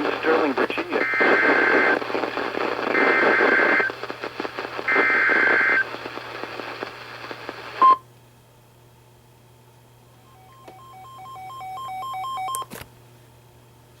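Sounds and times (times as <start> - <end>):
radio static: 0.0 - 7.9.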